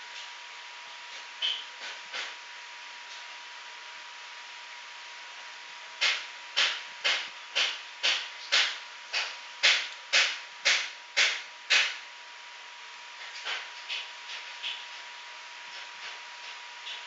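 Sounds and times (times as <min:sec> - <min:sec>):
sharp evenly spaced taps: 0:06.0 - 0:12.0.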